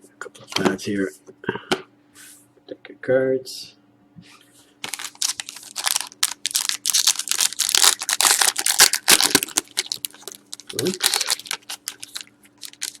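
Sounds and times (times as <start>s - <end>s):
plastic packaging crinkling: 4.8s - 13.0s.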